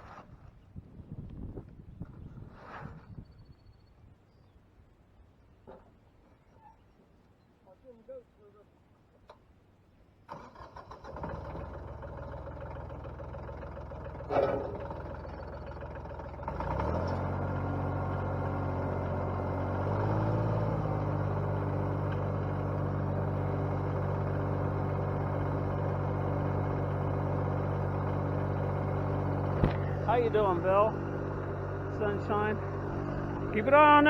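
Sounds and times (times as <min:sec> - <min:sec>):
tractor engine sputtering and running: 0:10.3 - 0:34.0
wood chipper spinning: 0:10.4 - 0:34.0.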